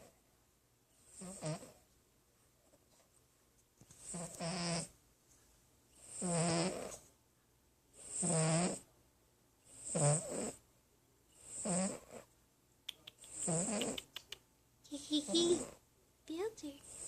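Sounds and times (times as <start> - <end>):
quiet breaths: 0.0 - 17.0
cat snoring: 1.0 - 1.8, 4.0 - 4.9, 6.0 - 7.0, 8.0 - 8.9, 9.7 - 10.6, 11.4 - 12.3, 13.3 - 14.0, 15.2 - 15.8.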